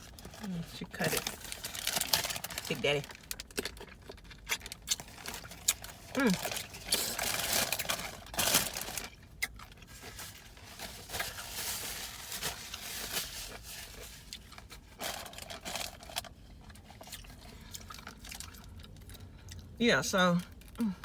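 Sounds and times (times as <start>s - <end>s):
person chewing food: 3.3s - 8.3s, 9.0s - 10.4s, 13.5s - 19.8s.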